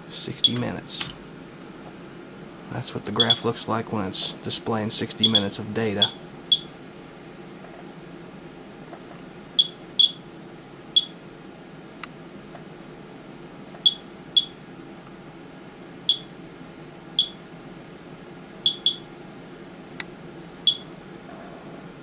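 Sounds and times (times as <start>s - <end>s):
geiger counter beeps: 3.2s - 3.4s, 5.2s - 6.7s, 9.6s - 10.2s, 11.0s - 11.2s, 13.8s - 14.6s, 16.1s - 16.3s, 17.2s - 17.4s, 18.7s - 19.0s, 20.7s - 20.9s.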